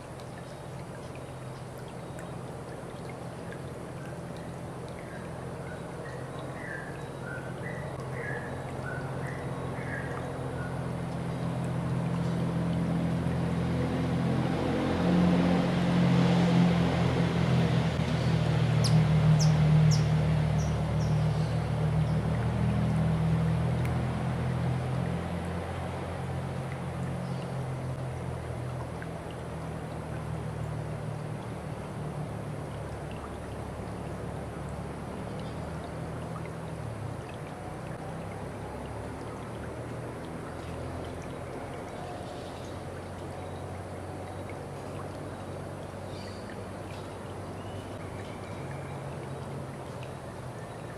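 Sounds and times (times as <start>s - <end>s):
faint high ticks: 0.0s - 5.2s
low motor hum: 0.0s - 50.9s
water flowing: 0.0s - 50.9s.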